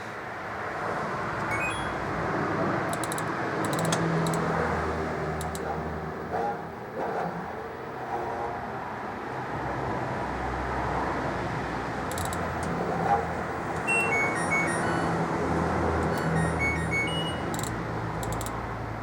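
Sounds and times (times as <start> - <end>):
short electronic beeps: 1.4 - 2.1, 13.8 - 15.3, 16.0 - 18.5.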